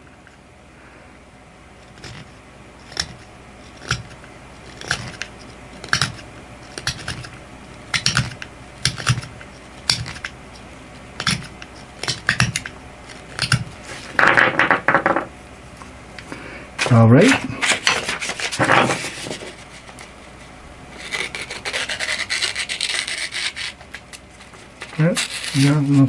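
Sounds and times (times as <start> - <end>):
knife scraping antler: 1.8 - 14.1, 21.0 - 26.0.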